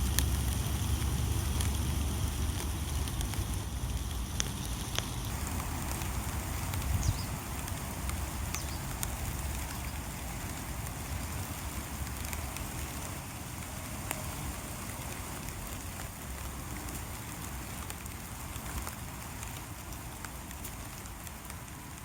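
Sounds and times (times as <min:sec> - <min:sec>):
low rumble: 0:00.0 - 0:10.2
light rain hissing: 0:00.0 - 0:22.0
raindrop taps: 0:00.0 - 0:22.0.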